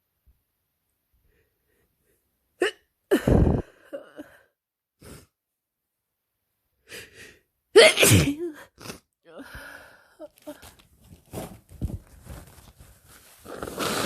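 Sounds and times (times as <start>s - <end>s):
person sneezing: 7.8s - 9.4s.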